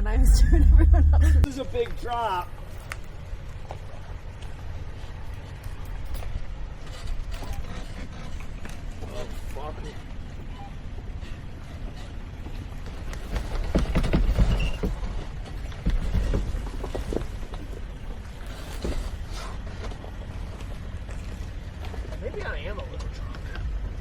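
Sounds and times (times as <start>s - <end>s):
low engine rumble: 0.0s - 24.0s
vehicle knocks and clunks: 6.0s - 20.9s.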